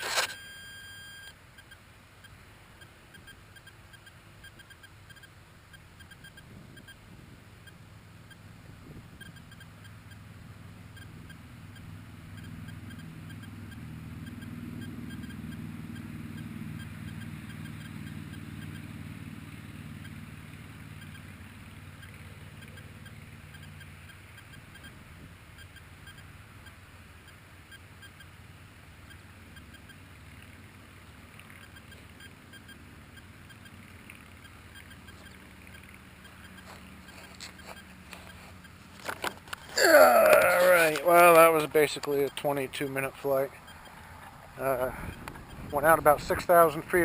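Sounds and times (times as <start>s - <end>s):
model plane electric motor hum: 0.0s - 0.8s.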